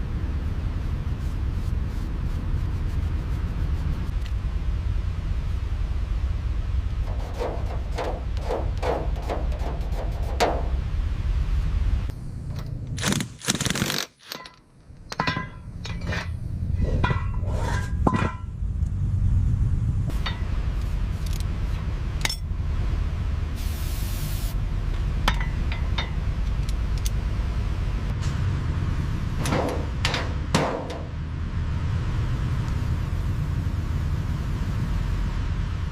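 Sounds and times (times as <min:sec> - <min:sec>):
steady low rumble: 0:00.0 - 0:13.2, 0:14.6 - 0:35.9
metal tools clinking and scraping: 0:14.2 - 0:18.4
burst of hiss: 0:23.6 - 0:24.6.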